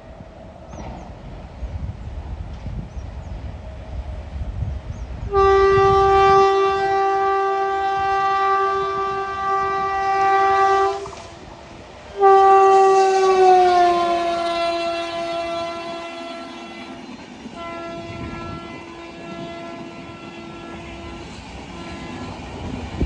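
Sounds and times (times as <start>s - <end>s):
low train rumble: 0.0s - 23.0s
locomotive horn blasts: 5.3s - 17.0s, 17.6s - 22.5s.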